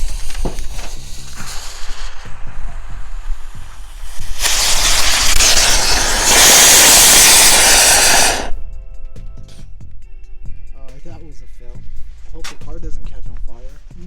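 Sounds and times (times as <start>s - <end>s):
firework hissing sparks: 0.0s - 8.6s.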